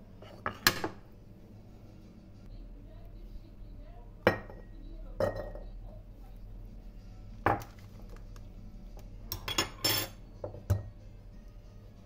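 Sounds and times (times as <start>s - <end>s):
kitchenware clinking on glass: 4.2s - 5.7s, 9.3s - 11.0s.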